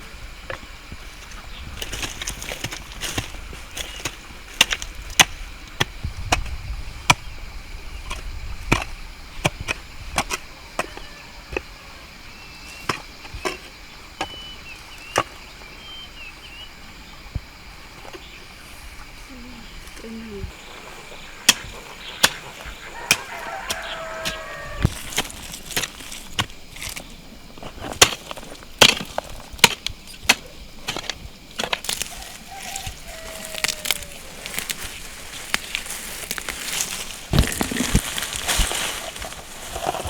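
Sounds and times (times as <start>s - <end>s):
fowl calls: 10.8s - 12.1s, 19.4s - 24.9s, 31.9s - 40.0s.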